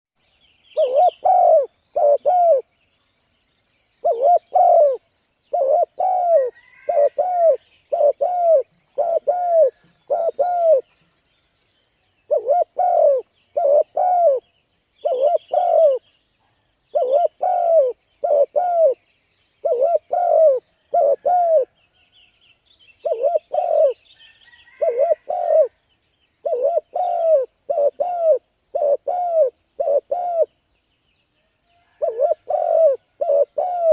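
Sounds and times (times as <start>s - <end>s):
small birds chirping: 0.2s - 33.9s
dove cooing: 0.8s - 2.7s, 4.0s - 10.9s, 12.3s - 14.4s, 15.0s - 16.0s, 16.9s - 19.0s, 19.6s - 21.8s, 23.0s - 24.0s, 24.6s - 25.8s, 26.4s - 30.6s, 31.9s - 33.9s.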